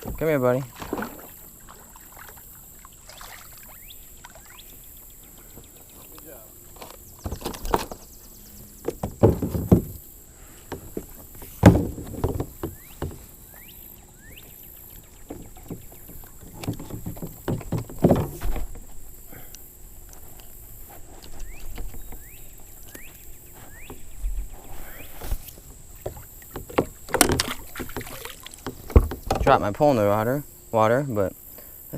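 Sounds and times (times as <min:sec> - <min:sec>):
thumps and knocks in a kayak: 0:00.0 - 0:02.4, 0:06.7 - 0:19.2, 0:20.0 - 0:30.4.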